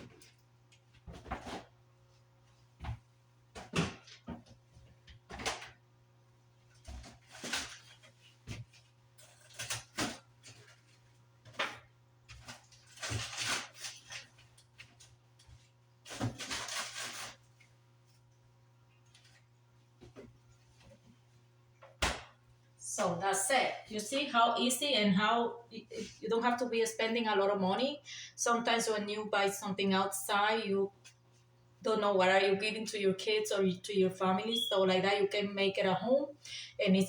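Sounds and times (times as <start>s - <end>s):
rustling and scraping: 0.0s - 2.7s, 6.7s - 18.3s.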